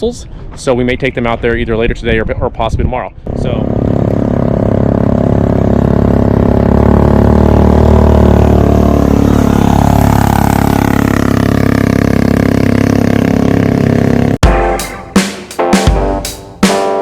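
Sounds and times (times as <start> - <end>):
vehicle engine running loud: 3.3 - 14.4.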